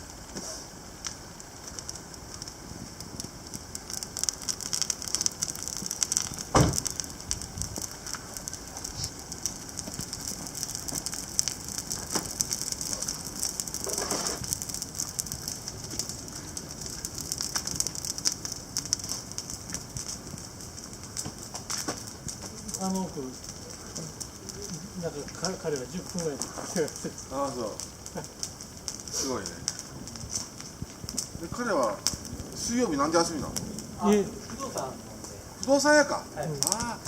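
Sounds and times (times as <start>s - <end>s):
campfire crackling and popping: 0.0s - 37.0s
heavy thump: 6.5s - 6.9s.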